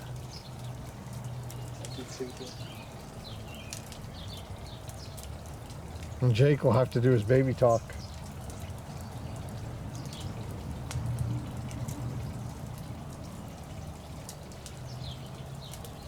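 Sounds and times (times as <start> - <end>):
campfire crackling: 0.0 - 16.0.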